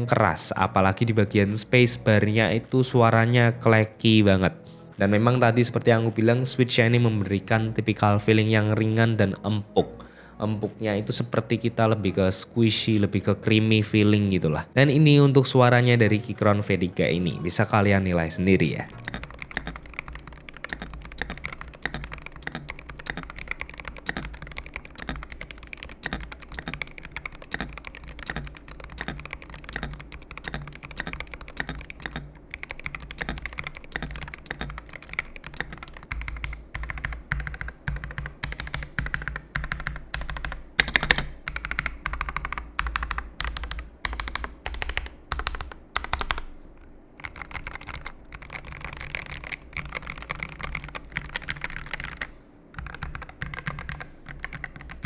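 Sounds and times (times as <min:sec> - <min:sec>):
mechanical keyboard typing: 0:18.7 - 0:46.5, 0:47.2 - 0:55.0.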